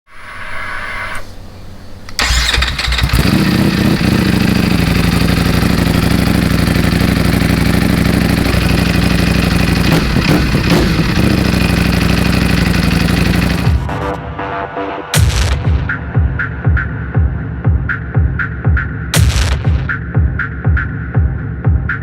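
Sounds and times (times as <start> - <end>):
motorcycle starting and idling: 1.9 - 14.0.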